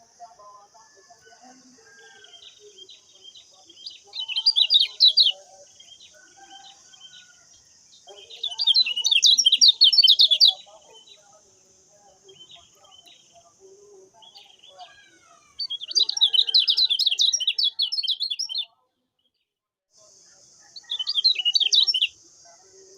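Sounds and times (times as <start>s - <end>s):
soft scattered twittering: 0.0s - 18.8s, 20.0s - 22.9s
bird chirping rapidly: 2.2s - 7.3s, 8.0s - 11.2s, 15.6s - 18.7s, 20.8s - 22.1s.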